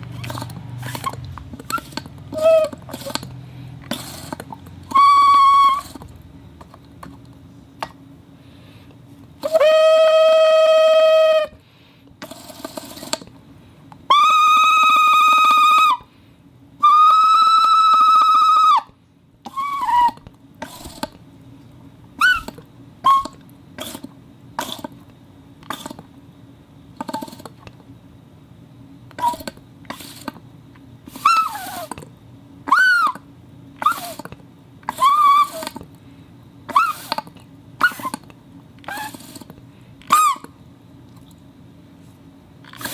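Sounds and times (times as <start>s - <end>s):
held whistle tones: 0.8s - 3.2s, 4.8s - 6.0s, 9.4s - 11.6s, 14.1s - 16.1s, 16.8s - 20.2s, 22.2s - 23.4s, 31.1s - 31.9s, 32.7s - 34.2s, 34.9s - 35.8s, 36.7s - 37.2s, 37.8s - 38.2s, 40.0s - 40.5s
squeaky chirping whistles: 1.7s - 2.8s, 4.9s - 6.0s, 16.8s - 18.9s, 19.5s - 20.2s, 22.2s - 23.4s, 31.2s - 31.9s, 32.7s - 33.2s, 34.9s - 35.6s, 36.7s - 37.1s, 40.1s - 40.5s.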